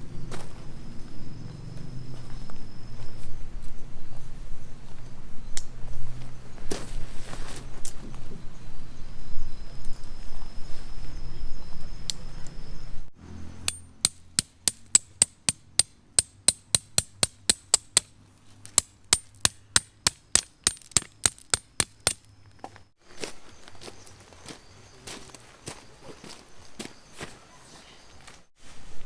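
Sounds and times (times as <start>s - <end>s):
tent stakes being hammered: 13.6s - 22.3s.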